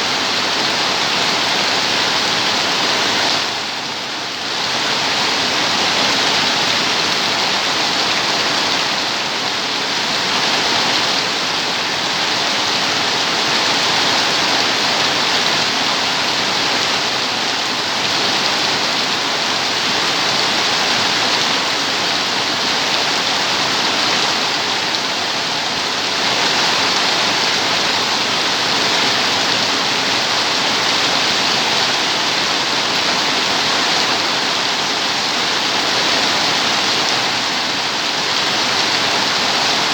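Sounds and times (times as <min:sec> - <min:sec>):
heavy rain hiss: 0:00.0 - 0:39.9.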